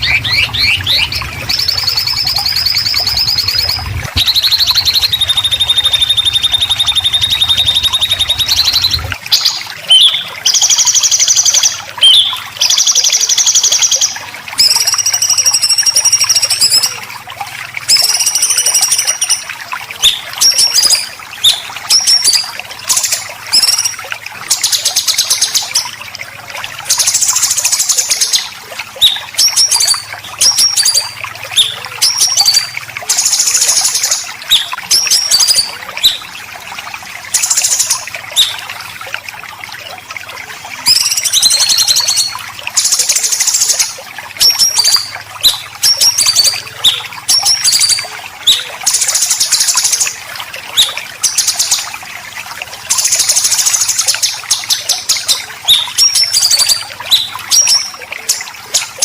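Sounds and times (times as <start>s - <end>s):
low hum: 0.0s - 9.2s.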